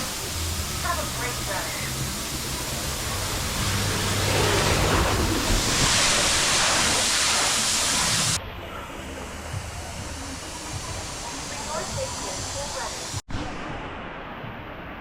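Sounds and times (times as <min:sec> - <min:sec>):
splashing water: 0:00.0 - 0:08.4.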